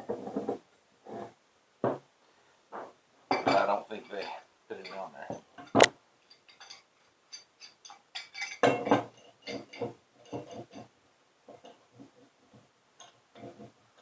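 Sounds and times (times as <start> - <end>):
metal parts clinking and knocking: 3.4 - 10.9.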